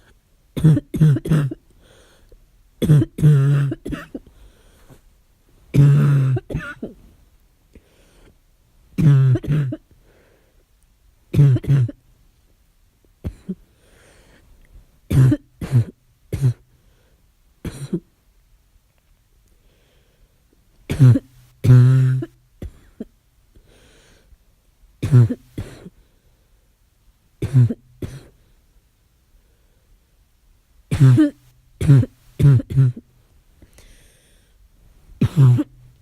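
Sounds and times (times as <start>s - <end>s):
person coughing harshly: 0.6s - 1.6s, 2.8s - 4.3s, 5.7s - 7.0s, 9.0s - 9.9s, 11.3s - 12.0s, 13.2s - 13.6s, 15.1s - 16.6s, 17.6s - 18.1s, 20.9s - 23.1s, 25.0s - 26.0s, 27.4s - 28.4s, 30.9s - 33.0s, 35.2s - 35.8s.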